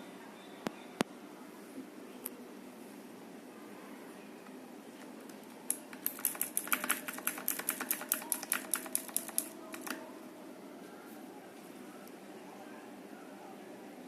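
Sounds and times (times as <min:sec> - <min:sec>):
mechanical keyboard key clicks: 0:05.7 - 0:10.0.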